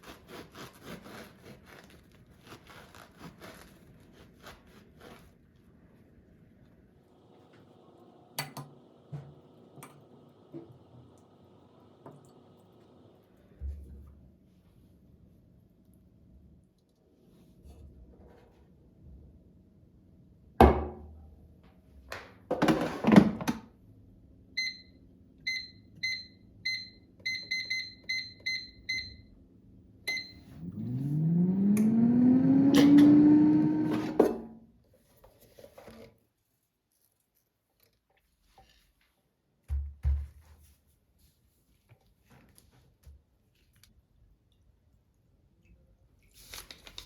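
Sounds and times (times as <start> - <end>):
appliance motor whining: 30.6 - 34.2.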